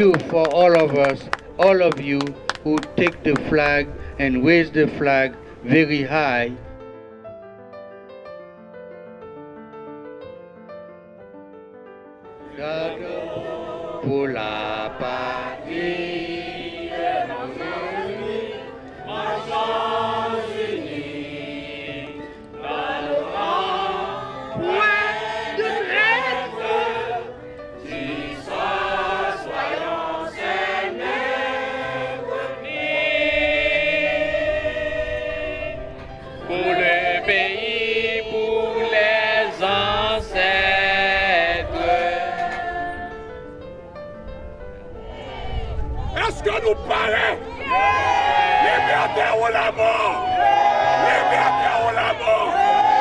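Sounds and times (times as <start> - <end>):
group of voices singing: 12.5 - 43.2, 47.0 - 53.0.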